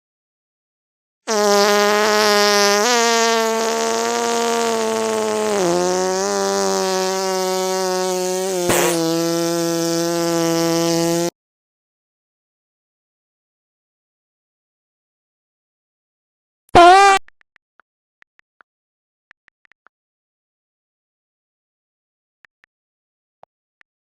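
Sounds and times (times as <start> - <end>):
buzzy fart noise: 1.3 - 11.4, 16.7 - 17.2.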